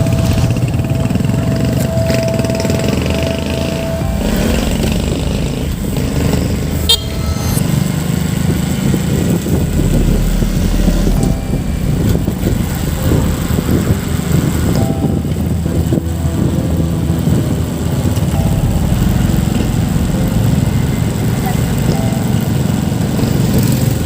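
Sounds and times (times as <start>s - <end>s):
vehicle engine and traffic: 0.0s - 24.0s
horn toot: 2.2s - 14.7s.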